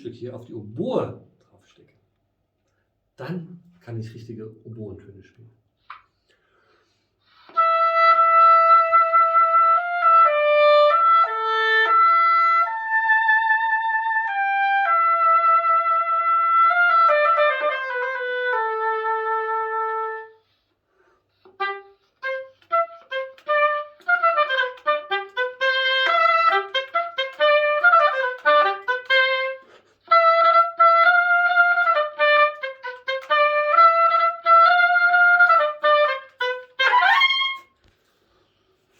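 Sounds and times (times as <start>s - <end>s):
solo oboe melody: 7.3s - 20.7s, 21.4s - 37.9s.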